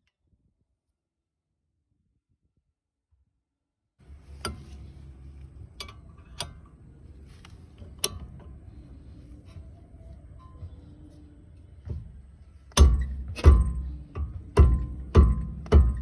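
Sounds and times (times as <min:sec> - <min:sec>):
low steady hum: 0:04.0 - 0:16.0.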